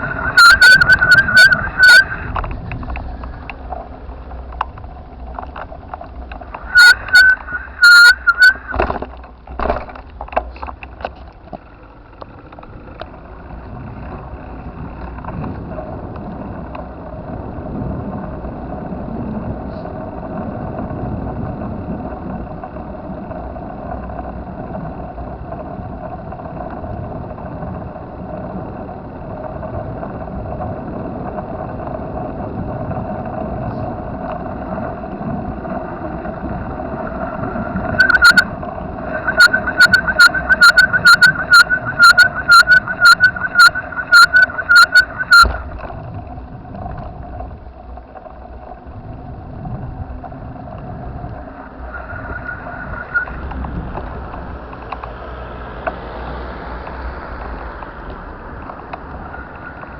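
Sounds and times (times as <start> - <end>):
electronic beeper: 0.0 - 2.4, 6.6 - 9.0, 37.8 - 45.7, 51.8 - 53.4
bicycle road noise: 0.0 - 59.9.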